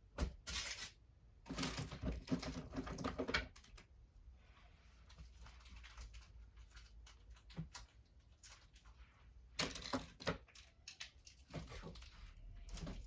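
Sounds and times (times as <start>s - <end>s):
plastic crinkling and rustling: 4.7s - 13.0s.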